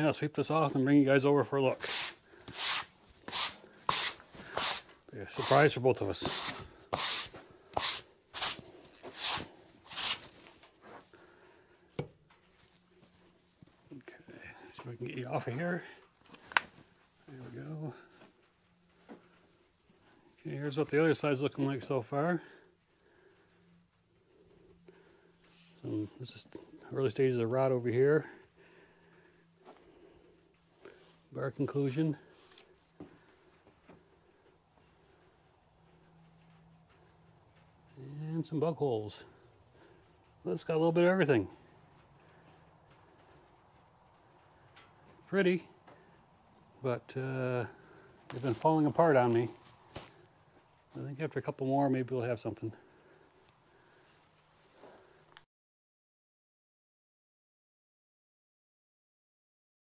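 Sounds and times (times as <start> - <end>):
crickets chirping: 0.0 - 55.4
brush sweeping sawdust: 1.7 - 10.5, 48.3 - 49.4.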